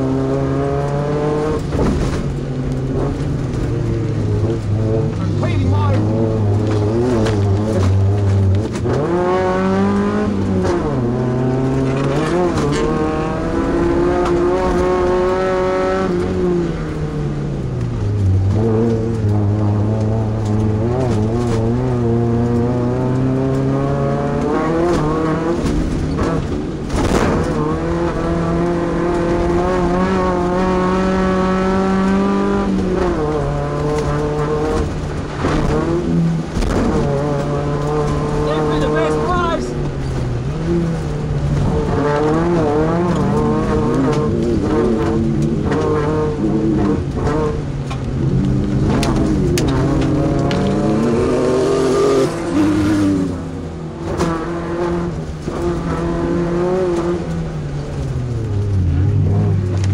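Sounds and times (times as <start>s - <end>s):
race truck engine revving: 0.0s - 59.9s.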